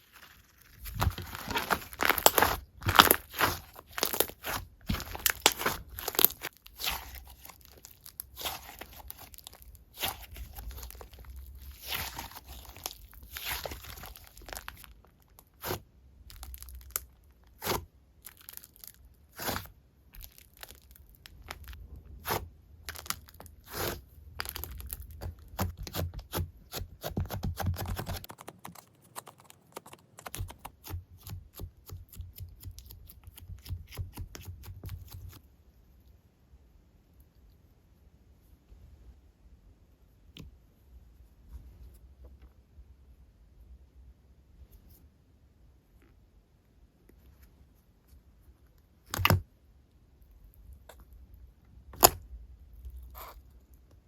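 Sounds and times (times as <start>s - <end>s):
sticky slime squishing: 0.0s - 35.4s.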